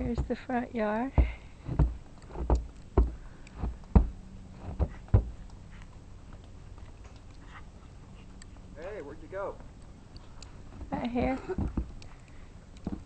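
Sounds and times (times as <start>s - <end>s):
heavy footsteps: 0.0s - 5.5s.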